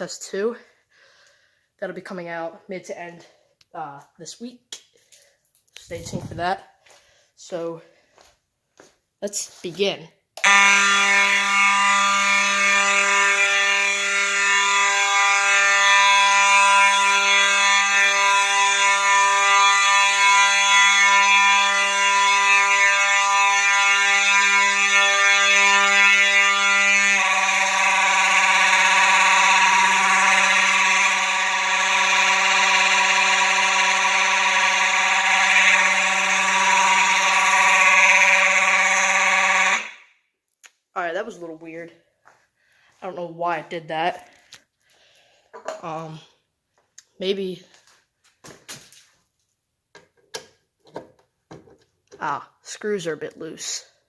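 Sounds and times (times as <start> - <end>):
fire alarm horn buzzing: 5.2 - 7.0, 10.4 - 40.4.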